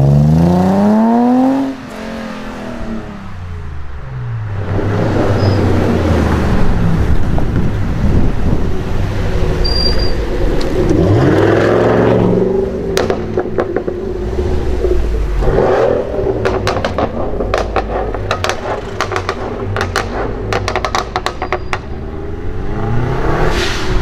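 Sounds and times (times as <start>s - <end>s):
sports car engine revving: 0.0s - 3.4s, 10.4s - 23.6s
exhaust pops and crackles: 12.9s - 14.2s, 16.3s - 21.9s.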